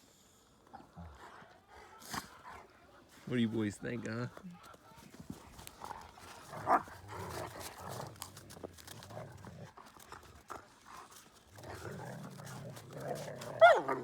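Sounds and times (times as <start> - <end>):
dog grumbling: 11.6 - 14.0
dog yelping: 13.6 - 14.0.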